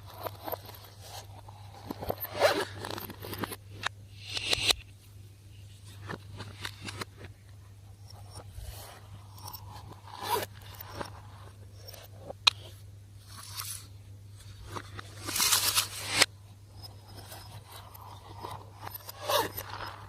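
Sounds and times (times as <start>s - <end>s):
sharp click: 3.8s - 4.9s.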